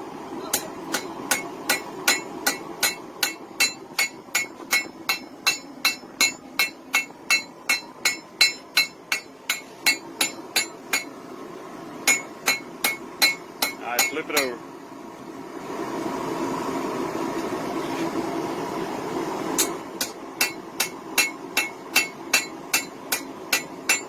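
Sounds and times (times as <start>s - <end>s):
hammer striking metal on anvil: 0.5s - 11.1s, 12.1s - 14.5s, 19.6s - 24.0s.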